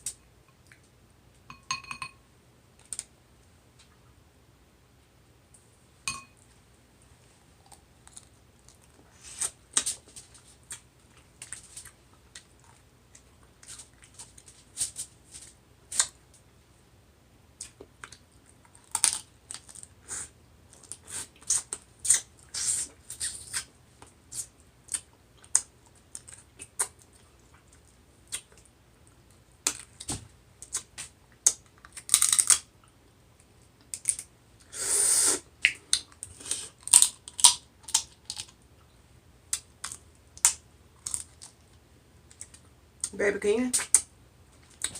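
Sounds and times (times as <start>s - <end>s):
shellfish cracking while eating: 17.6s - 19.9s, 29.6s - 32.7s, 33.8s - 34.3s, 35.6s - 38.6s, 39.5s - 41.6s.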